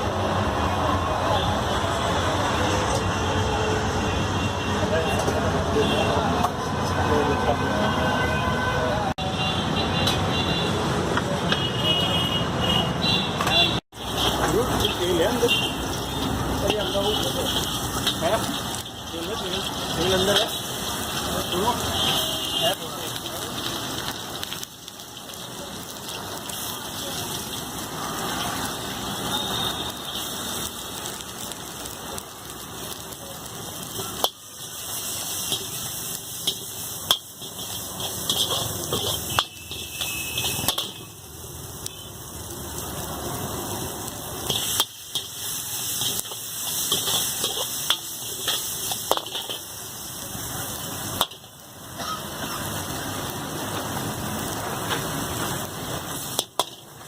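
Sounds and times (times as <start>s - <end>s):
food sizzling: 9.2s - 57.0s
metal utensils clinking: 15.9s - 21.6s, 34.0s - 41.2s, 44.4s - 49.8s.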